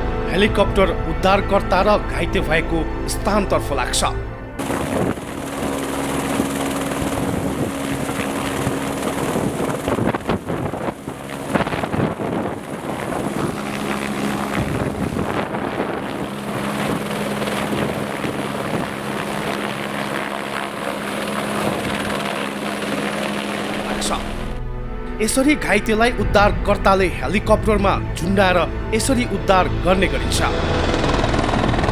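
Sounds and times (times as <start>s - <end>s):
helicopter flying close: 3.7s - 24.9s, 28.0s - 31.9s.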